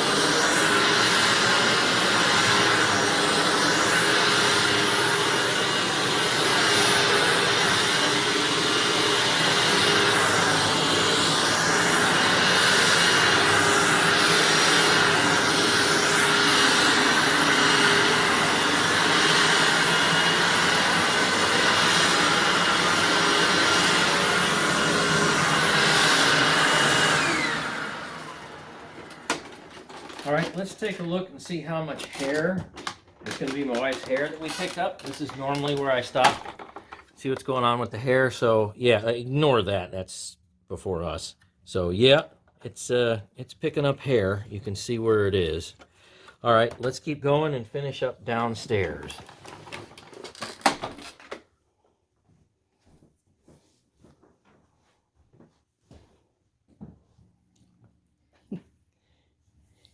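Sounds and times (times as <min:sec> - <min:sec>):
motor winding down whine: 0:00.0 - 0:30.6
vacuum cleaner running on carpet: 0:00.0 - 0:31.3, 0:33.3 - 0:36.4.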